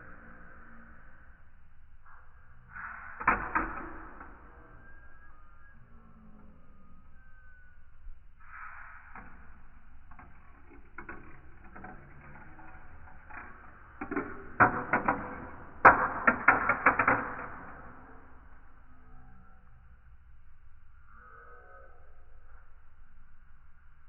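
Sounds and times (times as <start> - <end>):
marbles clattering along marble run: 9.3 - 18.4.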